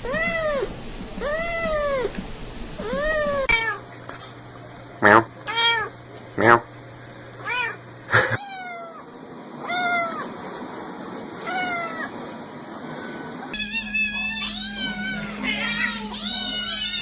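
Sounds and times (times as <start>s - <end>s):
kittens meowing: 13.6s - 17.0s
low hum: 13.6s - 17.0s.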